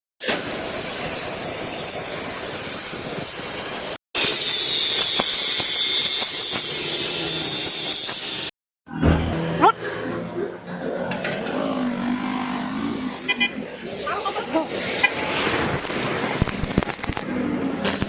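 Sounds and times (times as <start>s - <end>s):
welding arc crackling and hissing: 0.2s - 8.5s, 14.5s - 18.0s.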